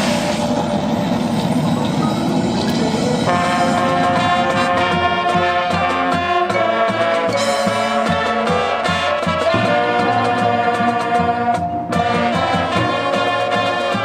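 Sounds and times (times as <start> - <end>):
drum strokes: 0.0 - 14.0
marching band brass chords: 3.1 - 14.0.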